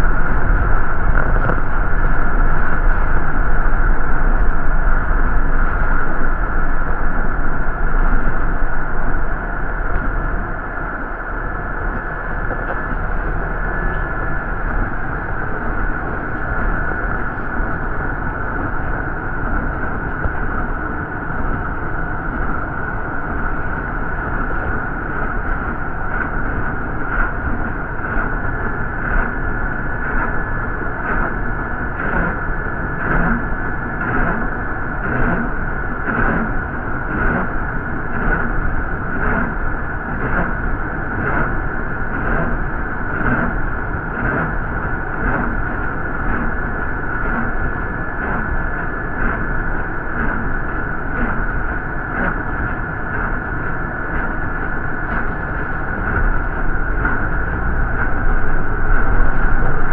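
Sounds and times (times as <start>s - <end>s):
bus engine and road noise: 0.0s - 11.1s, 55.0s - 59.9s.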